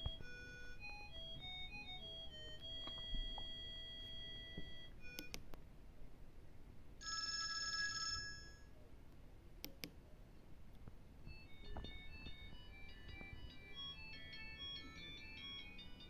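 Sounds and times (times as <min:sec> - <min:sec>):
phone ringtone melody: 0:00.0 - 0:05.3, 0:07.0 - 0:08.7, 0:11.3 - 0:16.0.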